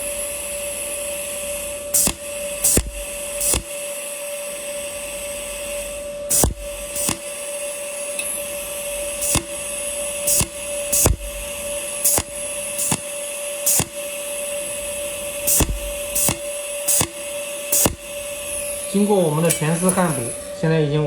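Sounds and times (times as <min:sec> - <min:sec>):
welding machine humming: 0:00.0 - 0:21.0
sharp clicks: 0:02.0 - 0:03.7, 0:06.4 - 0:07.3, 0:09.2 - 0:09.6, 0:10.3 - 0:11.4, 0:12.0 - 0:14.0, 0:15.5 - 0:18.3.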